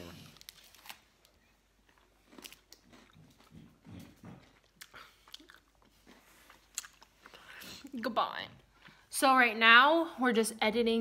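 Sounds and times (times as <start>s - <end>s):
chewing chocolate crunches: 0.2s - 7.5s.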